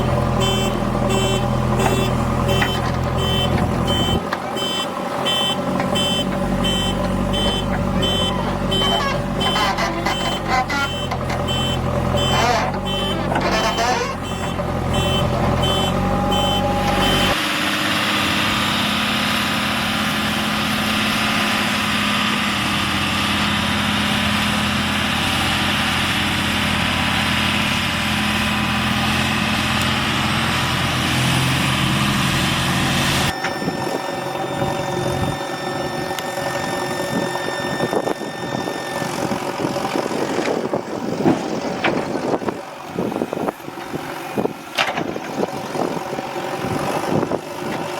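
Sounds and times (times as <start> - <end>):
diesel engines of earthmoving machinery: 0.0 - 47.9
reversing alarm beeping: 0.4 - 17.4, 33.2 - 40.1.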